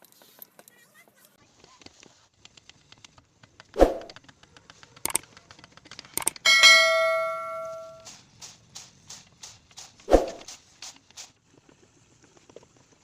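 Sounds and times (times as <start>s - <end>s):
metal piece ringing: 6.3s - 8.0s.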